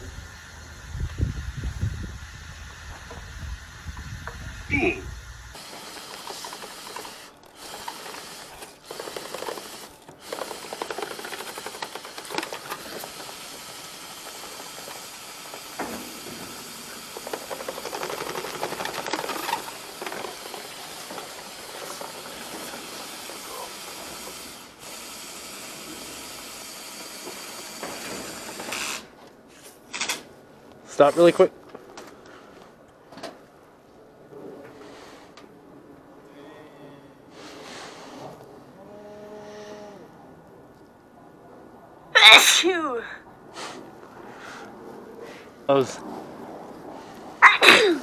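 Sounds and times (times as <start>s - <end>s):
duct cleaning equipment hissing: 0.0s - 29.1s.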